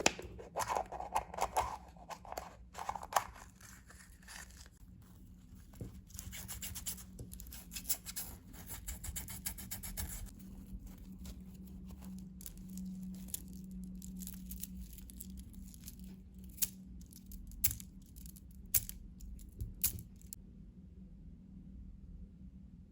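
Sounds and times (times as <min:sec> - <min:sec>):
packaging crinkling: 0:00.0 - 0:04.8.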